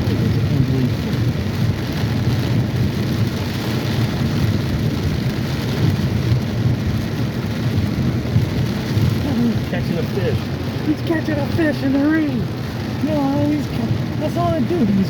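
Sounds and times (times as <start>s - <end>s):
heavy rain pouring: 0.0s - 15.0s.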